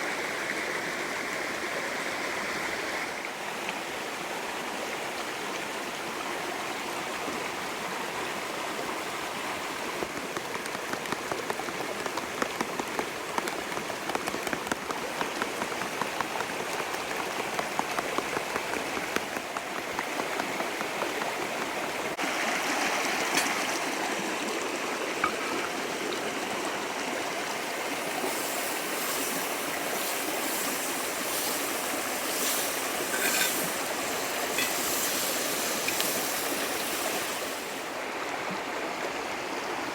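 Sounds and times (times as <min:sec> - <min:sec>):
creek running: 0:00.0 - 0:39.9
small crackles and clicks: 0:10.0 - 0:22.2, 0:28.3 - 0:37.3.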